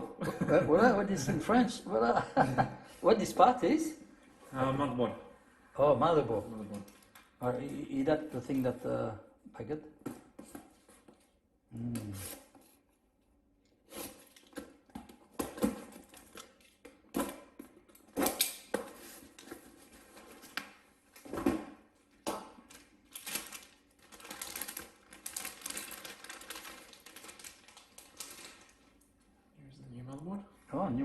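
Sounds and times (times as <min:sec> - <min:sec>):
rustling and crinkling: 0:17.6 - 0:29.3.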